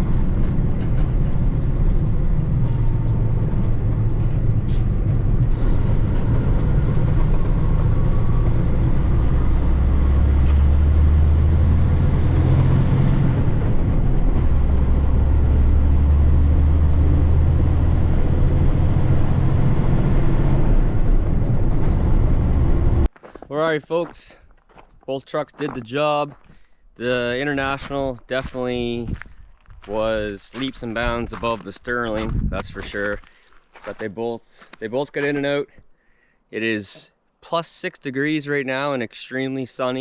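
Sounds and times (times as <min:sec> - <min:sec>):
truck diesel engine droning: 0:00.0 - 0:23.1.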